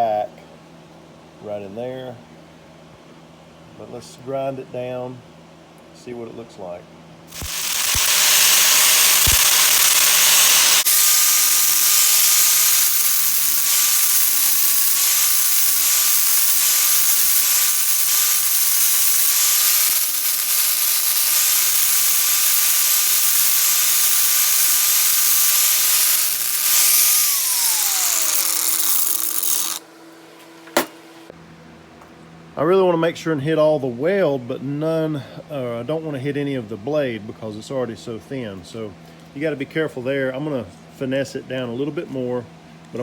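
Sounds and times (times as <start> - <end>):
electric grinder grinding steel: 7.3 - 29.8.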